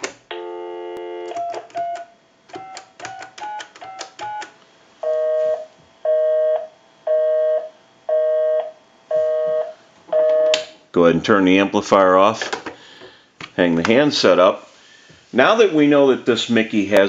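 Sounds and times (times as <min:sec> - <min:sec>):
busy signal beeping: 0:03.9 - 0:10.6.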